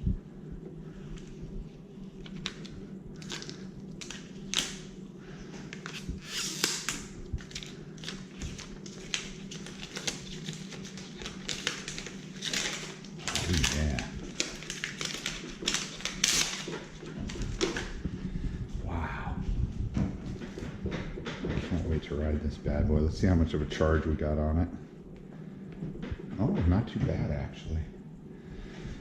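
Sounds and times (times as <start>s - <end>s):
plastic wrapping crinkling: 2.1s - 4.9s, 5.7s - 18.0s.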